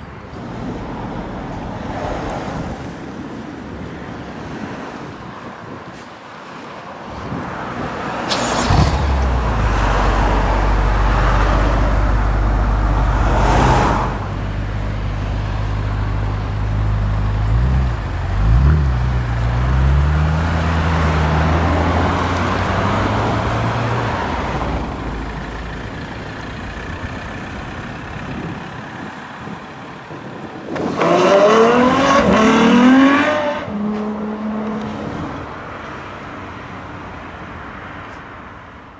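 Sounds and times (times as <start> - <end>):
car engine starting and idling: 8.0 - 30.8
car accelerating hard: 30.7 - 35.1.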